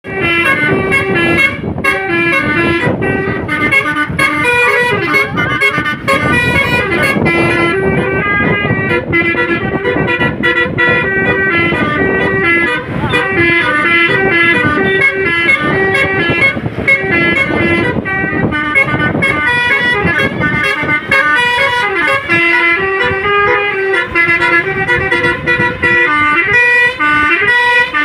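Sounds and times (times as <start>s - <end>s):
multi-tone musical vehicle horn: 0.0s - 28.0s
vehicle rumbling: 0.0s - 28.0s
wind noise: 0.0s - 28.0s.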